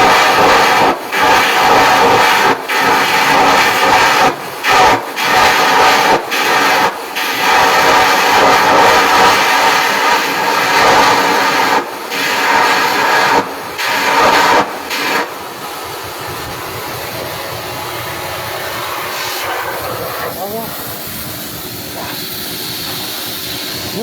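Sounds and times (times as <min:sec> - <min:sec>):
welding arc crackling and hissing: 0:00.0 - 0:24.0.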